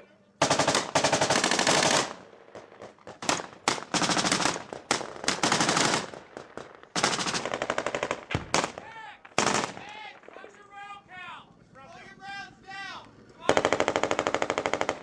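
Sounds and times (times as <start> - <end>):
automatic gunfire bursts: 0.4 - 10.5, 13.4 - 15.0.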